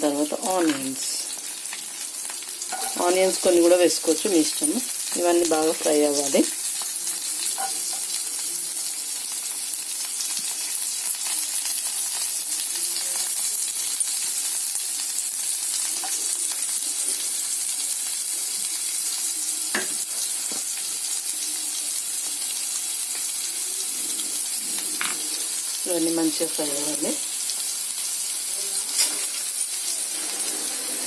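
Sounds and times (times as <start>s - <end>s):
oil sizzling in a pan: 0.0s - 31.0s.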